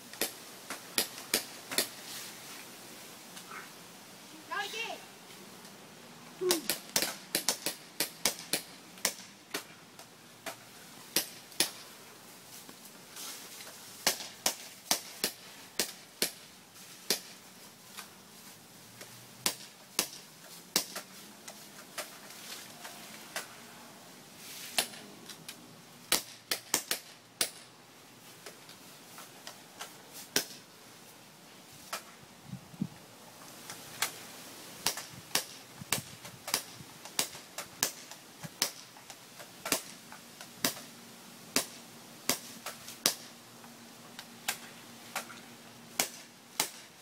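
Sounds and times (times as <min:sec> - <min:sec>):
airsoft guns firing: 0:06.6 - 0:09.6.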